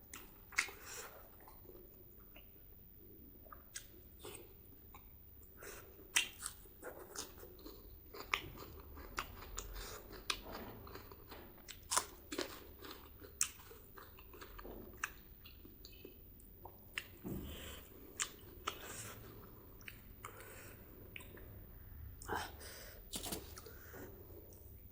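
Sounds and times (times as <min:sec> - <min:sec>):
person chewing food: 0:06.1 - 0:17.2.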